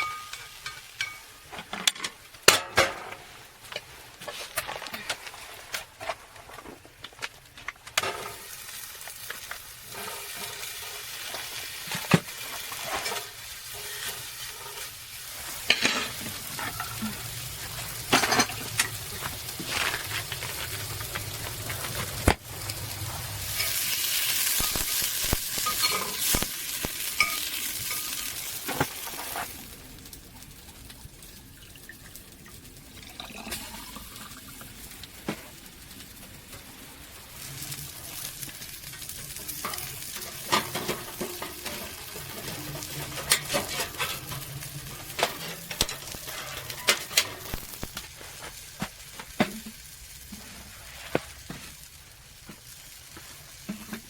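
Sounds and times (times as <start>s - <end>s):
food sizzling in a pan: 0.0s - 2.4s, 8.0s - 54.0s
utensil scraping a pan: 9.3s - 26.5s, 39.0s - 48.6s.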